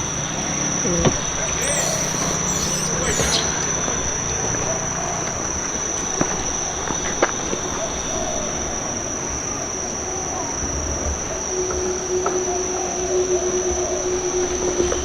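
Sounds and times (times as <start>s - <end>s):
insects shrilling: 1.4s - 4.2s.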